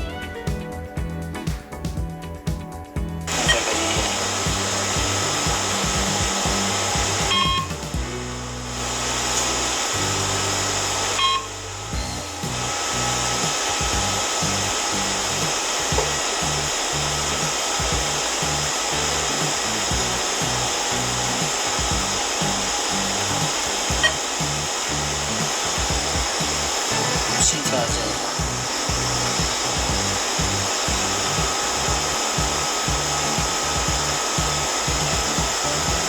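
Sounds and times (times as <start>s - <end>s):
music with pulsing bass: 0.0s - 36.0s
air blower hissing: 3.0s - 36.0s.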